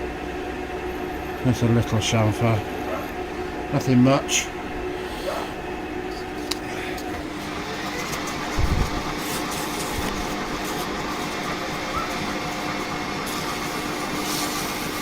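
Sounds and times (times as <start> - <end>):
lathe running with a hum: 0.0 - 15.0.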